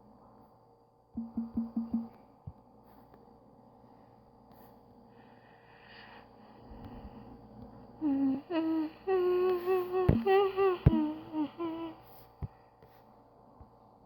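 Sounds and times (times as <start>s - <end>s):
person humming a tune: 1.2s - 2.2s, 8.0s - 12.2s.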